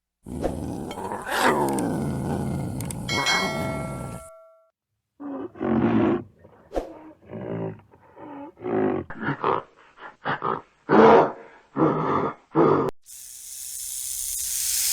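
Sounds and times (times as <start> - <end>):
big cat roaring: 0.2 - 4.3, 5.2 - 12.9.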